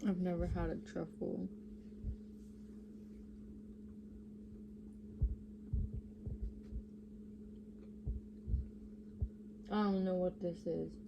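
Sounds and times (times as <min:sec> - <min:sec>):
low electrical hum: 0:00.0 - 0:11.0
dull low thumps: 0:00.3 - 0:00.8, 0:02.0 - 0:02.3, 0:05.1 - 0:07.0, 0:08.0 - 0:09.5.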